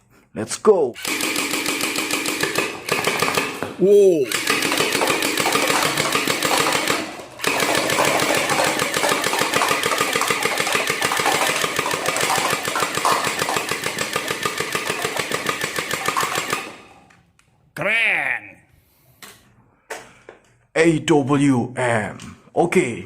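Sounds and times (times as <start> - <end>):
toy rifle rapid automatic fire: 1.0 - 17.0.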